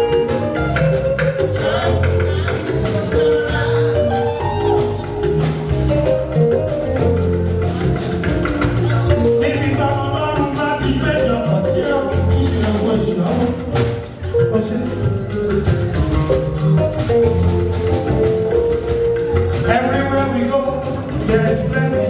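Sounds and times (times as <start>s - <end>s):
loud band music: 0.0s - 22.0s.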